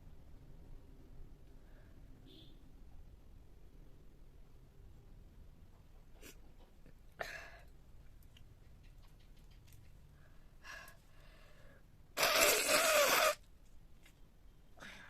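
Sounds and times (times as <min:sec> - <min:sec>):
person blowing nose: 0:12.2 - 0:13.4.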